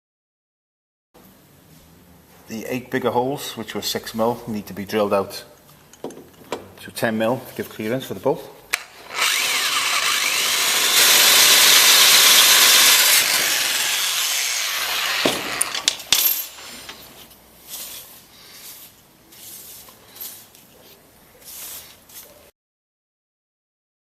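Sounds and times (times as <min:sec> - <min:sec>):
drill cutting through metal: 0:08.8 - 0:16.0
faint handling sounds: 0:16.2 - 0:22.5.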